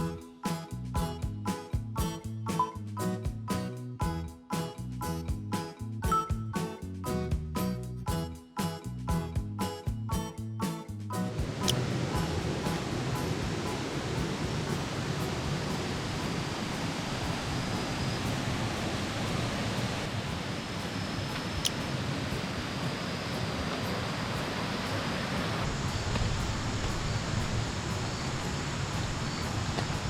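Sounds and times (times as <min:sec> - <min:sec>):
waterfall rushing: 0:11.4 - 0:30.0.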